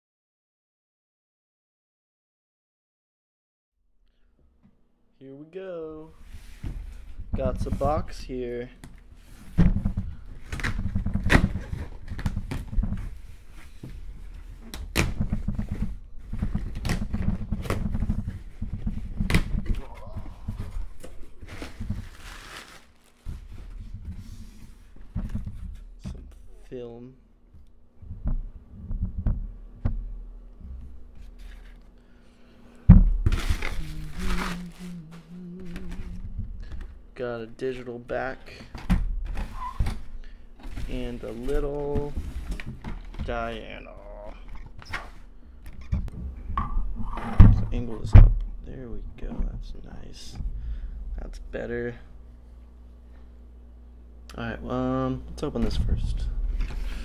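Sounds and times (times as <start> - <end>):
packaging rustling and crinkling: 9.2 - 24.0, 33.1 - 37.0
cardboard box rubbing and scraping: 33.3 - 35.2.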